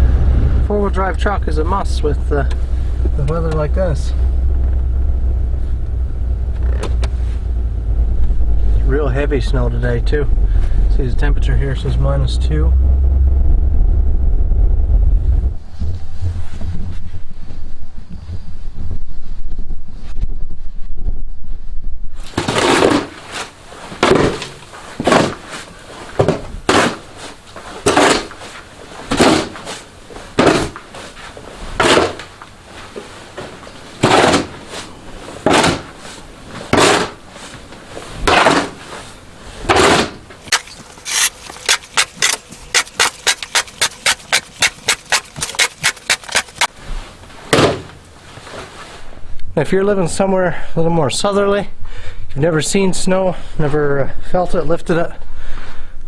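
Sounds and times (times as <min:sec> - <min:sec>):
snow shovel scraping snow: 0:40.5 - 0:46.7.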